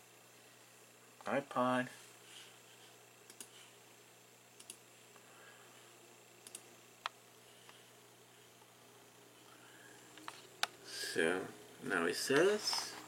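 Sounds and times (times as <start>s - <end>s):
computer mouse clicks: 3.3s - 3.6s, 4.6s - 4.8s, 6.4s - 7.2s.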